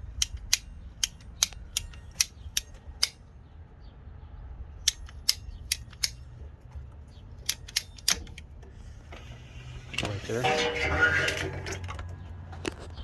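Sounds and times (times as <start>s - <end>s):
cutters snapping through hose: 4.9s - 6.2s, 7.5s - 8.4s.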